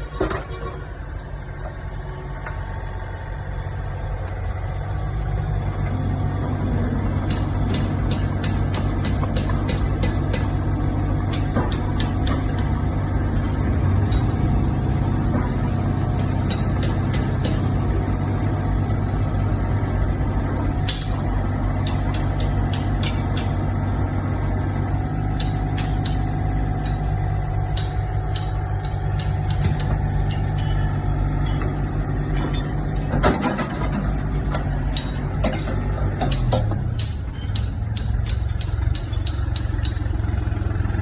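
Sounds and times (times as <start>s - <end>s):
excavator diesel engine running: 0.0s - 41.0s
sharp metallic knocks: 7.1s - 19.5s, 20.2s - 40.8s.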